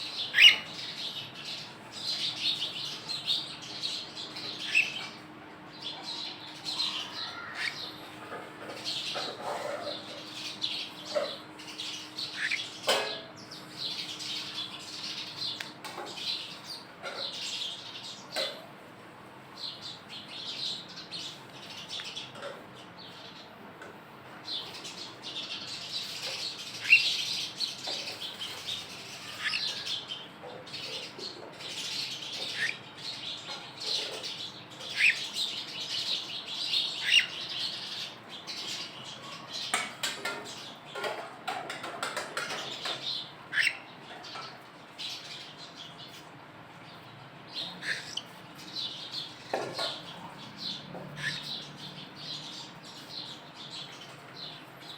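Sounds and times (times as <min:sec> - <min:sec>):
cockatiels chirping and chattering: 0:00.3 - 0:00.8, 0:04.3 - 0:05.2, 0:06.6 - 0:08.0, 0:08.6 - 0:13.1, 0:27.8 - 0:30.1, 0:30.7 - 0:32.8, 0:33.4 - 0:45.4, 0:47.5 - 0:51.7.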